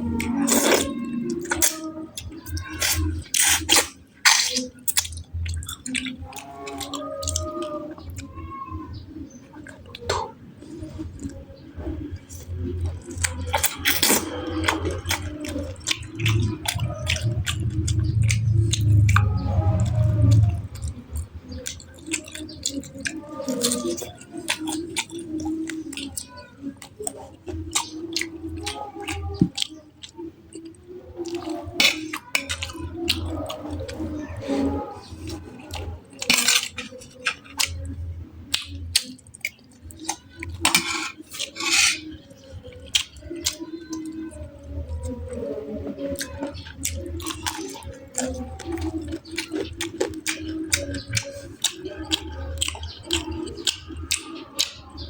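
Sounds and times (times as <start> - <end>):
mouth chewing with wet smacks: 0.0 - 55.0
low rumbling: 15.9 - 21.6
cutlery clinking against dish: 40.7 - 42.0.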